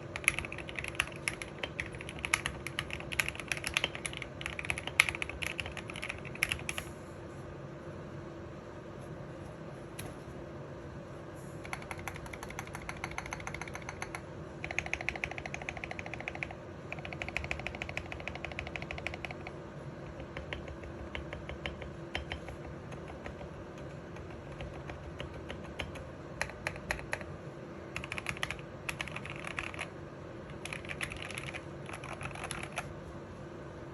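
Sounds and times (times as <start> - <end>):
typing on mechanical keyboard: 0.0 - 6.8, 11.6 - 27.3, 27.9 - 29.9, 30.5 - 32.9.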